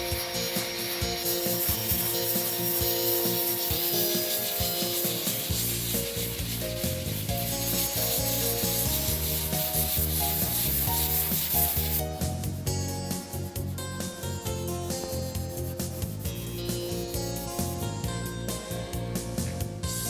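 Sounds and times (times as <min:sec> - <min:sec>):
sanding car bodywork: 0:00.0 - 0:18.2
background music with bass: 0:00.0 - 0:20.0.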